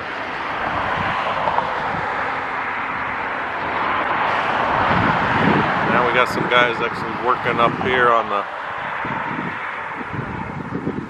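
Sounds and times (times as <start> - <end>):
passing vehicle rushing: 0.0 - 11.0.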